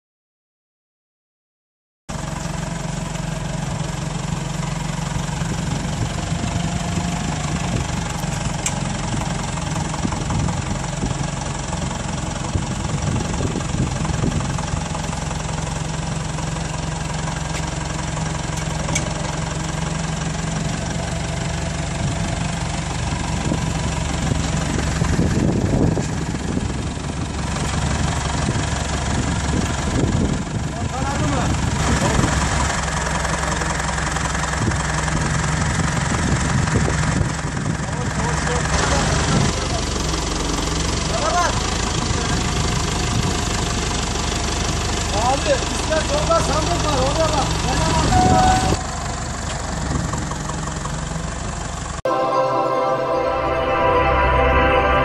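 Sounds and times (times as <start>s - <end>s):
air compressor diesel engine running: 2.1s - 52.1s.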